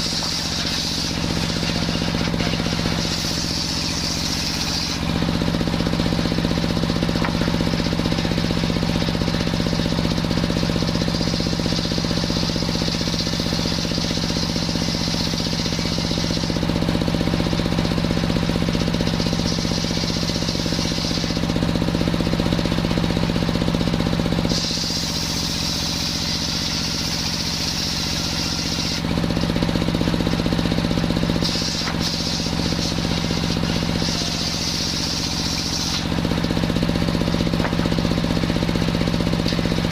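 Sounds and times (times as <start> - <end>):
saw blade hissing through wood: 0.0 - 8.2, 11.0 - 16.7, 19.1 - 21.5, 24.4 - 29.5, 31.2 - 39.9
engine drone: 0.0 - 39.9.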